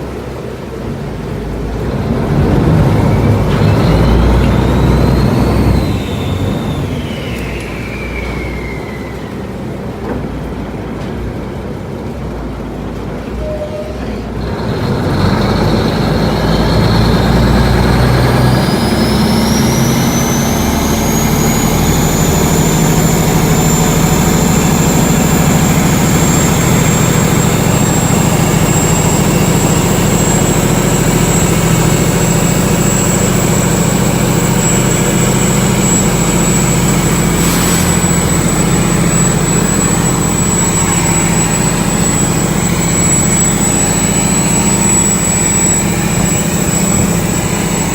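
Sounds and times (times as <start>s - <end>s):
boat engine drone: 0.0s - 47.9s
high engine whine: 0.0s - 47.9s.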